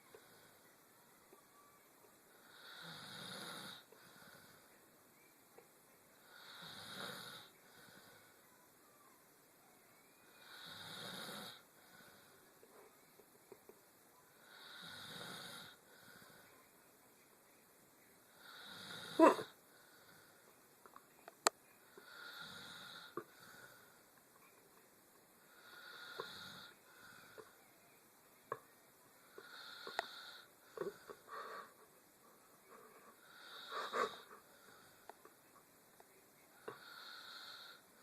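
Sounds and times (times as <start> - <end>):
person snoring: 2.3 - 4.6, 6.2 - 8.3, 10.4 - 12.4, 14.4 - 16.4, 18.4 - 20.4, 21.9 - 24.0, 25.4 - 27.6, 29.2 - 31.8, 33.1 - 35.1, 36.6 - 37.8
soft breath: 29.3 - 35.4.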